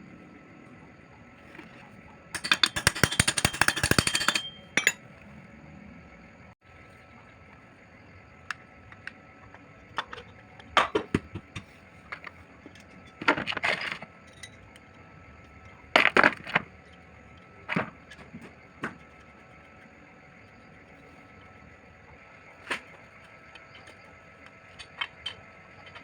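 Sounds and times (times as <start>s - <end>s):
metal rattling: 2.4s - 5.0s
metal tools clinking: 2.4s - 5.0s.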